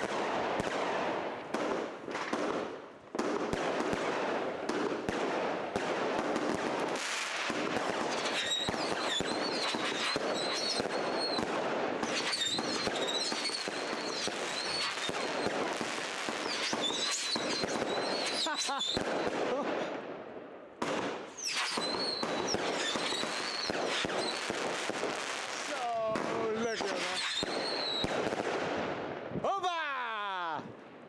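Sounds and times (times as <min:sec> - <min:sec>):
firework crackling and popping: 0:00.0 - 0:20.1, 0:20.8 - 0:29.8
high wavering firework whistle: 0:08.1 - 0:11.5, 0:12.1 - 0:15.7, 0:16.3 - 0:19.0, 0:21.4 - 0:24.6, 0:26.9 - 0:28.2.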